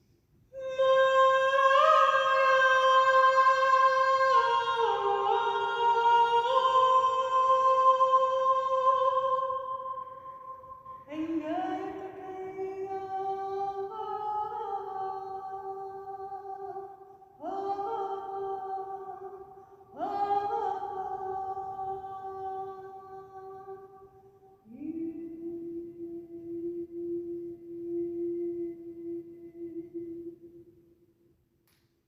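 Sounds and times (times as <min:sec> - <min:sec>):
woman singing wordless chant: 0:00.5 - 0:30.7.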